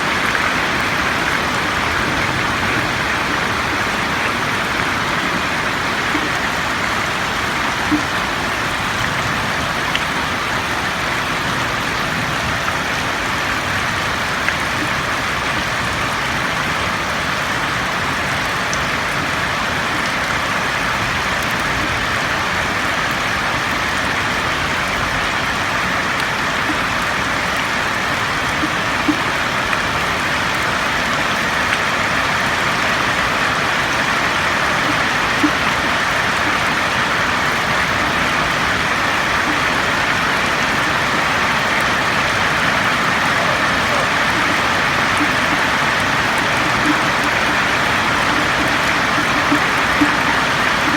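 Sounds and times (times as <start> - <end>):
rain on a roof: 0.0 - 50.9
single drops ticking: 43.3 - 50.9.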